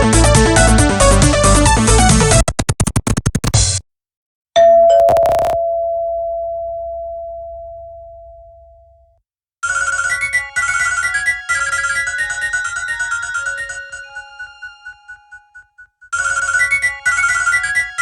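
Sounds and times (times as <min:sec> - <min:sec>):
bell-like tone: 0:04.6 - 0:09.1
bright beeping ringtone: 0:04.9 - 0:05.6, 0:09.6 - 0:18.0
electronic dance ringtone: 0:05.0 - 0:05.6, 0:09.7 - 0:18.0.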